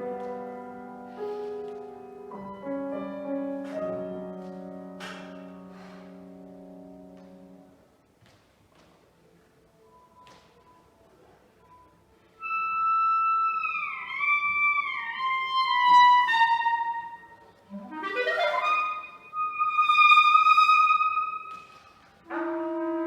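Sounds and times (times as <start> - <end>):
solo clarinet playing: 12.4 - 21.7.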